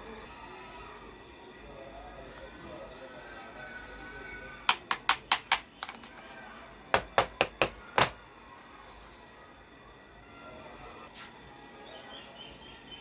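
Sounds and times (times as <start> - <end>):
hard objects knocking together: 4.7 - 6.2, 7.0 - 8.2
faint background music: 9.0 - 13.0.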